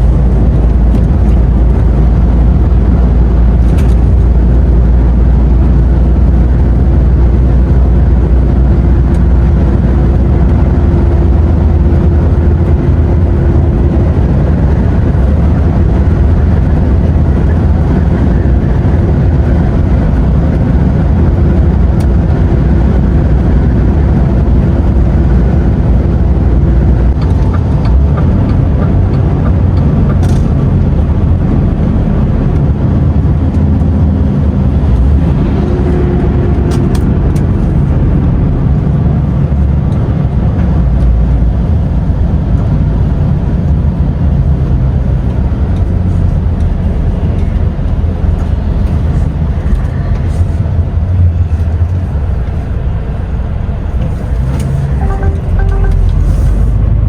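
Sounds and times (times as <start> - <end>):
lorry engine and road noise: 0.0 - 57.0
steady hum: 41.5 - 57.0.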